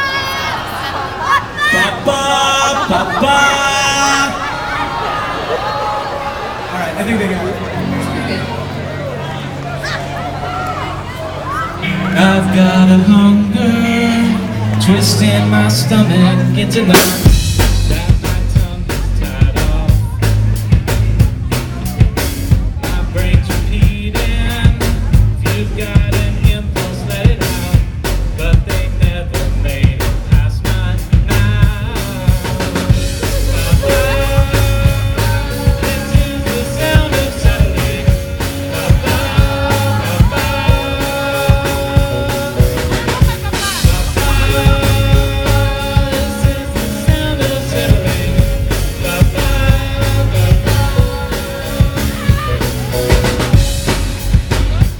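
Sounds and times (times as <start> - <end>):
held band chords: 6.3 - 54.9
fast rock drum beat: 14.8 - 54.9.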